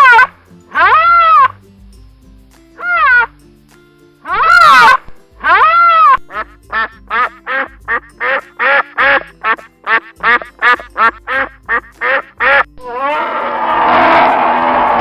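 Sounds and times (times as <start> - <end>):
duck quacking: 0.0 - 1.5, 4.3 - 12.7
faint background music: 0.0 - 15.0
loud rushing noise: 13.0 - 15.0.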